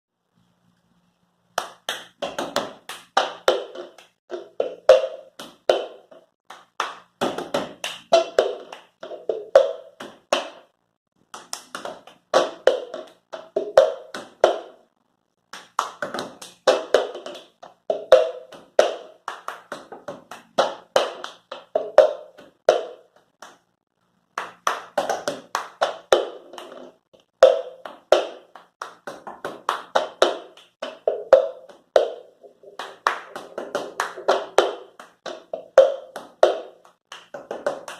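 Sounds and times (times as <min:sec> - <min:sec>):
hand claps and slaps: 0:01.6 - 0:14.8, 0:15.5 - 0:37.9.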